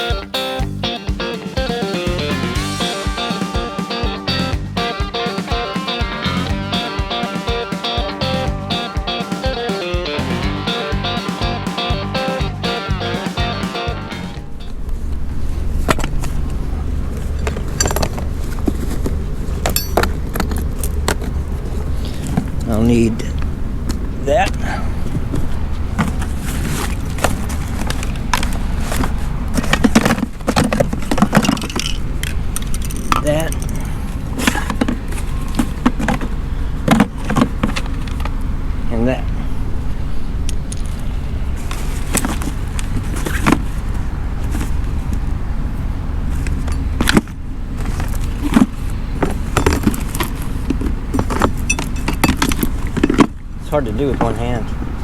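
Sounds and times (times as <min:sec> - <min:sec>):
low rumble of machinery: 0:14.0 - 0:55.0
gear clicking and rustling: 0:14.3 - 0:38.4, 0:40.4 - 0:54.9.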